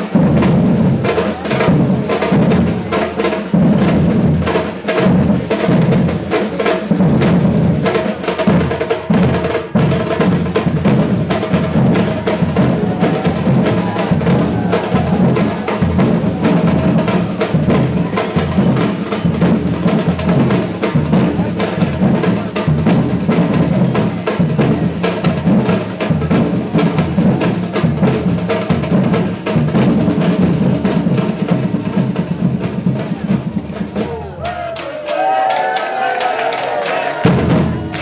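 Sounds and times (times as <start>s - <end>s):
percussion ensemble drumming: 0.0s - 38.0s
snare drums: 0.0s - 38.0s
deep bass drums: 9.9s - 31.9s.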